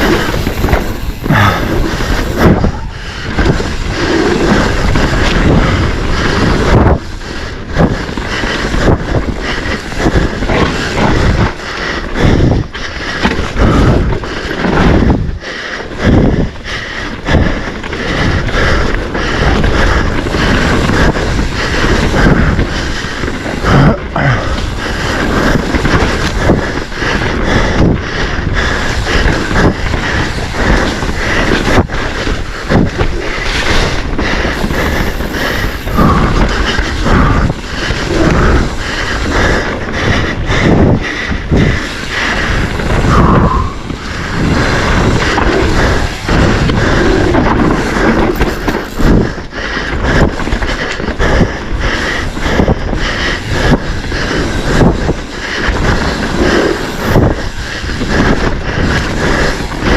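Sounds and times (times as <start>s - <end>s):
bike knocking and rattling: 0.0s - 59.9s
wind rushing on microphone: 0.0s - 59.9s.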